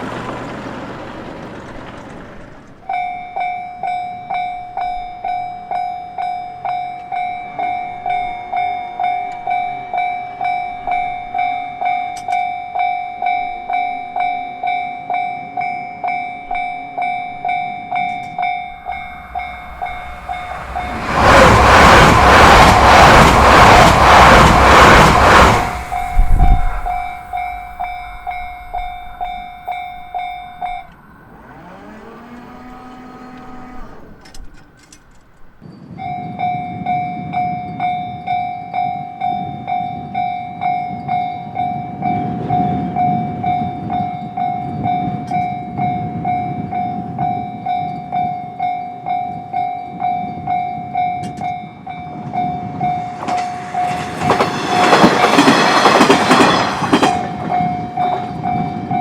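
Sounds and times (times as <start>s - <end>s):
train rumbling: 0.0s - 35.6s, 49.1s - 59.0s
level-crossing warning bell: 2.8s - 59.0s.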